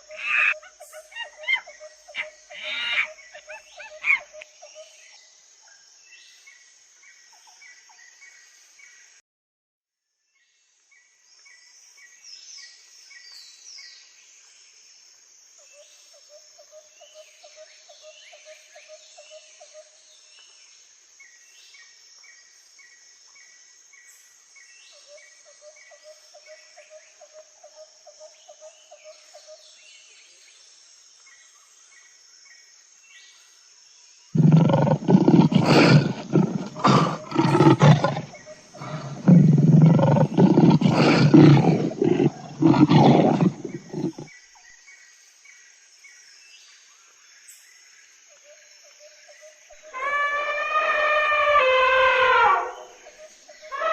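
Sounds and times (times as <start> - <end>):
birds chirping and trilling: 0.0 - 5.0, 34.4 - 44.4
big cat roaring: 34.4 - 44.3.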